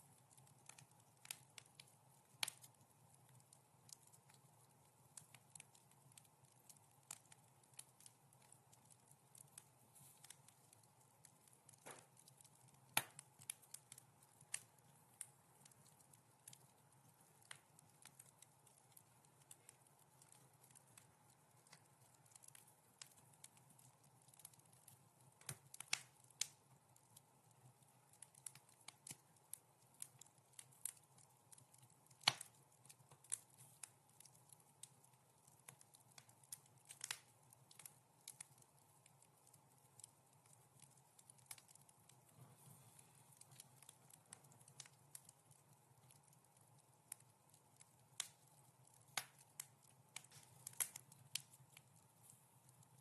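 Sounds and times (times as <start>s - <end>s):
wood fire crackling: 0.0s - 53.0s.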